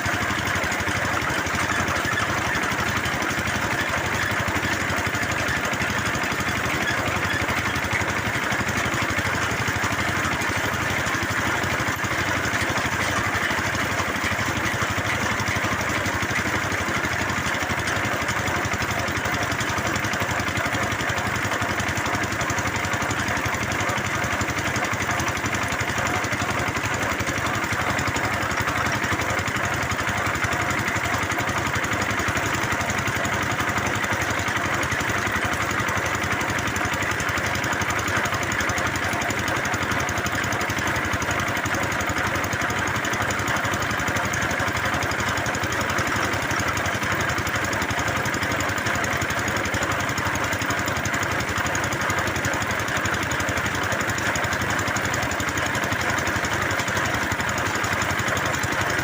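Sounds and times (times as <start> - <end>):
drilling machine engine running: 0.0 - 59.0.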